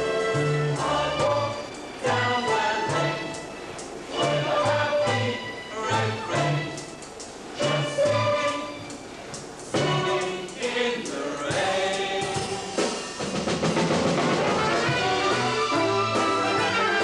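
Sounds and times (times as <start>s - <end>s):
orchestra with brass: 0.0s - 6.8s, 12.4s - 17.0s
chorus singing: 0.0s - 13.4s.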